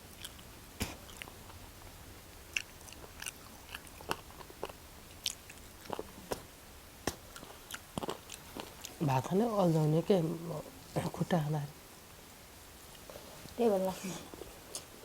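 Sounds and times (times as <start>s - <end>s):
chewing fried chicken: 0.0s - 9.0s.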